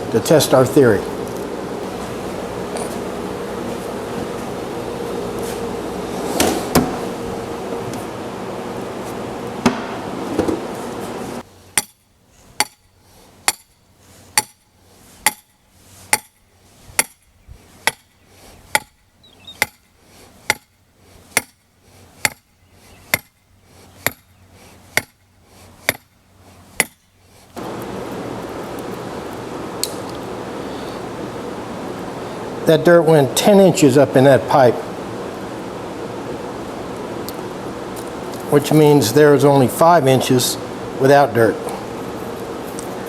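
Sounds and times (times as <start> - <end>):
steady hum: 0.0 - 12.8, 27.5 - 43.0
hammer striking iron pipe: 13.5 - 13.7, 15.3 - 15.5.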